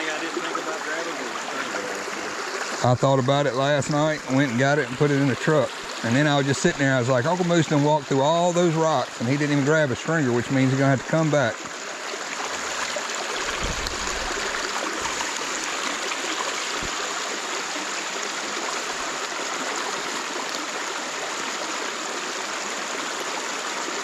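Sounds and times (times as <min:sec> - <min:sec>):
creek water rushing: 0:00.0 - 0:24.0
dull low bumps: 0:13.4 - 0:15.2.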